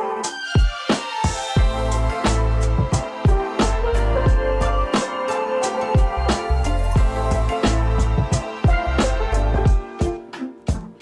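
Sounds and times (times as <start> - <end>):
sustained music tones: 0.0 - 11.0
booming bass drum hits: 1.6 - 4.6, 7.0 - 9.8.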